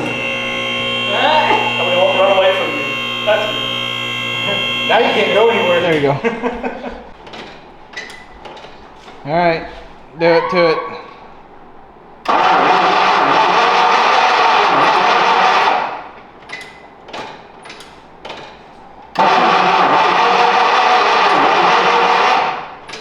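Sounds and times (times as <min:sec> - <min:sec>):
engine cranking without starting: 0:00.0 - 0:09.0.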